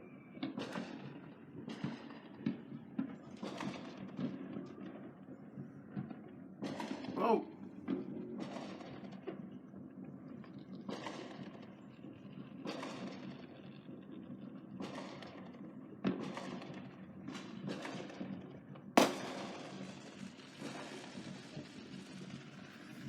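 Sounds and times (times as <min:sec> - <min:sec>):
fireworks bangs with crackling: 0:00.4 - 0:23.0
sharp loud firework bang: 0:19.0 - 0:19.9.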